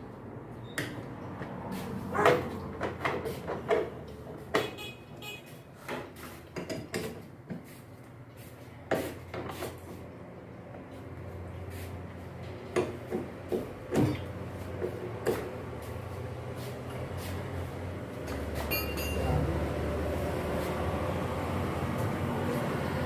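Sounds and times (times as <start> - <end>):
wrench and metal parts clanking: 18.3 - 19.4.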